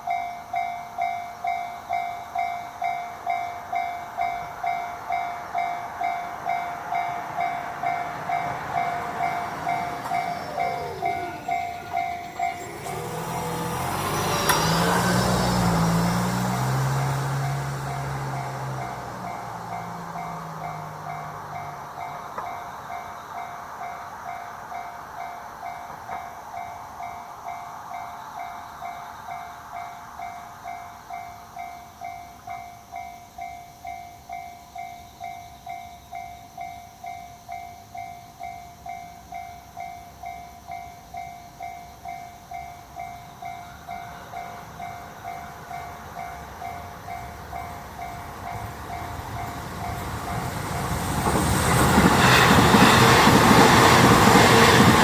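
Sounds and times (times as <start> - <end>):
railroad crossing bell ringing: 0.0 - 55.0
train rumble: 0.0 - 55.0.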